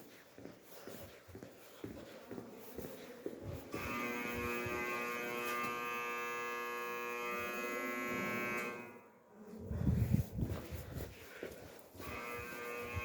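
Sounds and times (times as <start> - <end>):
warning beacon buzzer: 3.7 - 9.2, 12.0 - 13.0.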